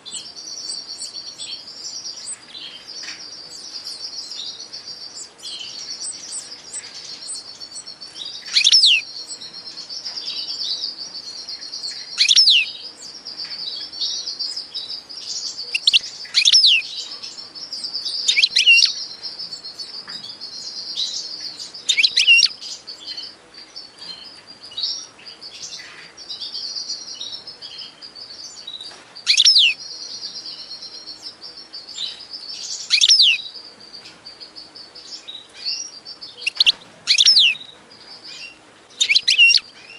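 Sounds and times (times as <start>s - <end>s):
small birds twittering: 0.0s - 39.9s.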